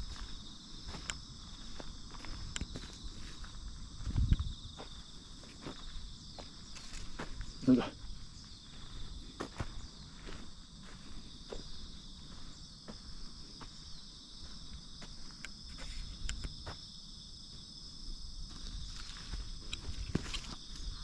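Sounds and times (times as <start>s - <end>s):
crickets and insects shrilling: 0.0s - 21.0s
small ticks: 0.2s - 3.4s, 14.4s - 16.8s, 18.9s - 21.0s
footsteps: 18.5s - 21.0s.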